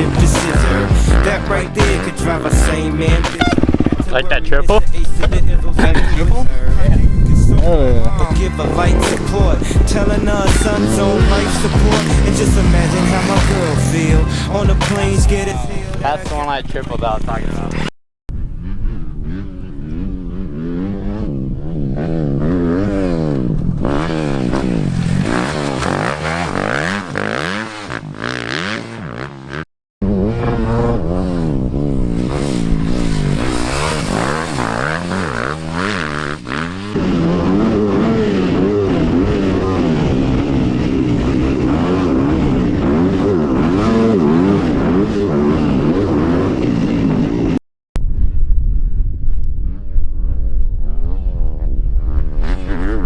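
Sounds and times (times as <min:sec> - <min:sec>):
dirt bike engine revving: 0:00.0 - 0:05.4, 0:07.3 - 0:47.6, 0:50.8 - 0:53.0.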